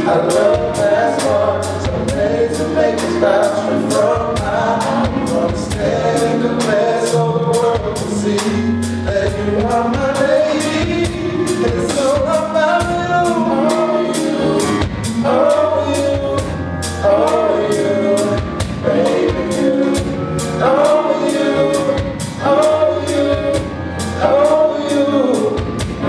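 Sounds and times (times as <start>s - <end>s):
bass: 0.0s - 26.0s
drum beat: 3.0s - 6.8s, 9.2s - 13.2s.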